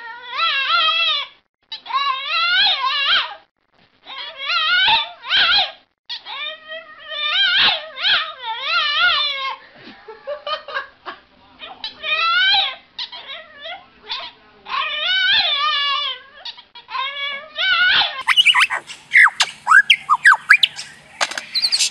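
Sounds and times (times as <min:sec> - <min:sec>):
quick high chirps: 0:18.2 - 0:21.9.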